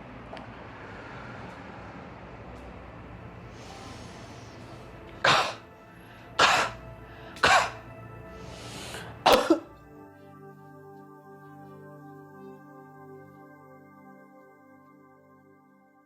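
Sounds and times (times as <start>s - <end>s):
soft background music: 0.0s - 16.0s
person coughing forcefully: 5.2s - 5.7s, 6.4s - 7.8s, 9.2s - 9.7s.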